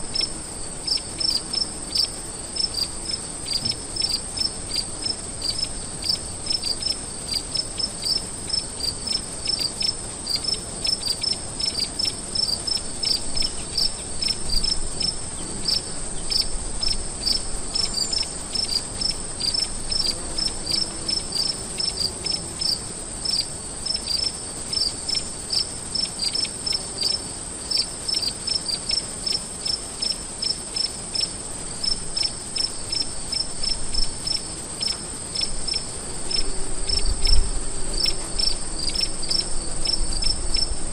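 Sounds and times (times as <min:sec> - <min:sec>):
crickets chirping in pulses: 0:00.0 - 0:40.9.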